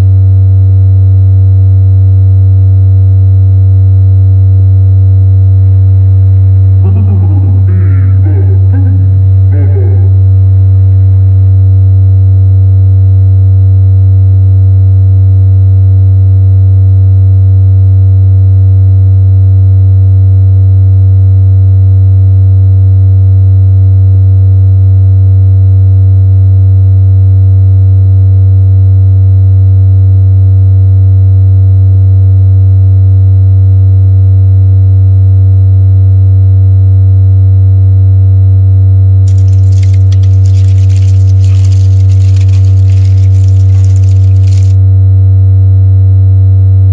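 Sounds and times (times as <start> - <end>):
low electronic drone tone: 5.0 - 12.3.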